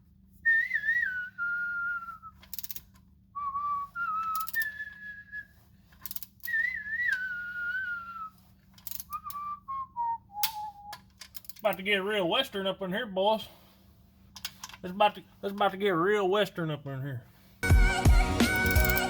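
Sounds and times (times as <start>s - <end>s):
person whistling a tune: 0.5s - 2.4s, 3.4s - 5.5s, 6.4s - 8.3s, 9.1s - 11.0s, 17.6s - 19.0s.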